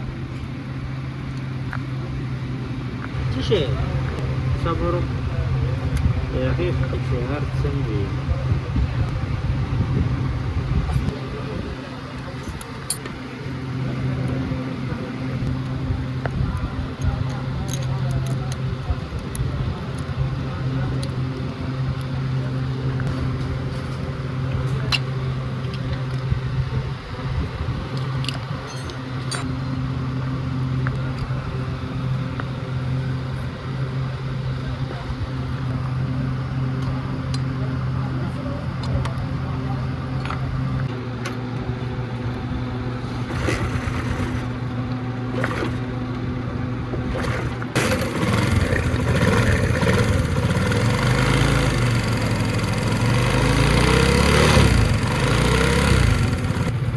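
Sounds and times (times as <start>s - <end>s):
motorcycle engine humming: 0.0s - 40.9s, 42.3s - 56.9s
motorcycle engine running: 43.0s - 46.0s, 46.9s - 56.9s.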